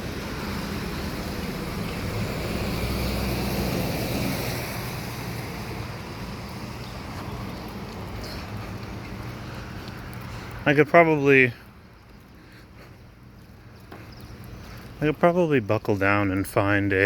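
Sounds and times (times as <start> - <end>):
vehicle passing on wet road: 0.0 - 11.9.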